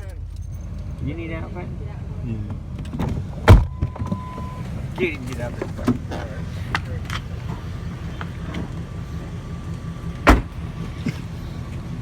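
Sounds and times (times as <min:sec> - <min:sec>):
car engine running: 0:00.0 - 0:12.0
car door shutting: 0:02.8 - 0:07.6, 0:10.2 - 0:10.7.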